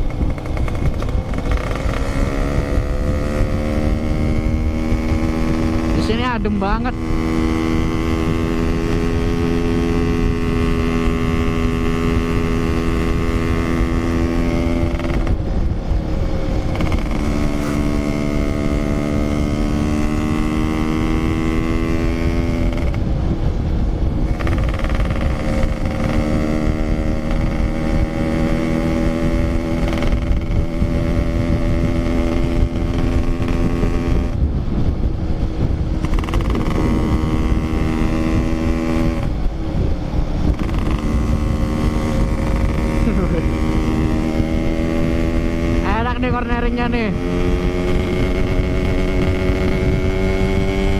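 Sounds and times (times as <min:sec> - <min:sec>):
two-stroke motorcycle engine revving: 0:00.0 - 0:50.9
wind noise rumble: 0:00.0 - 0:50.9.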